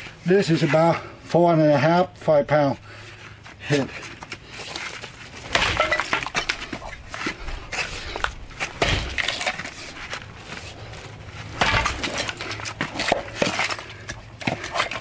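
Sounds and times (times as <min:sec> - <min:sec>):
axe chopping wood: 0:05.4 - 0:06.9, 0:08.6 - 0:09.7, 0:11.6 - 0:15.0.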